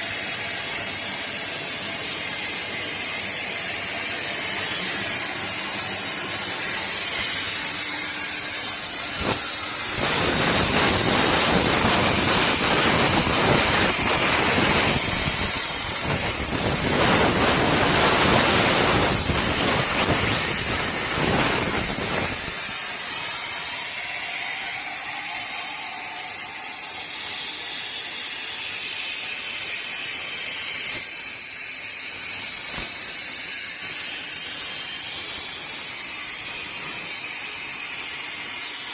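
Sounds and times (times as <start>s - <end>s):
plasma torch hissing: 0.0s - 38.9s
rough rush of noise: 9.1s - 22.6s.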